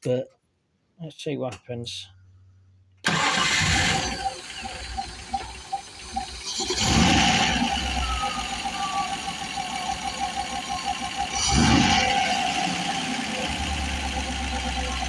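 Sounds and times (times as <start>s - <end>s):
pulsing hiss from engine: 3.1s - 15.0s
car engine running and revving: 3.5s - 15.0s.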